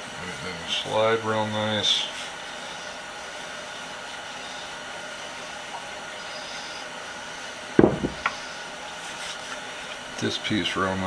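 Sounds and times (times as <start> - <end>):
workshop hum: 0.0 - 11.0
metal vise parts knocking: 7.8 - 8.4.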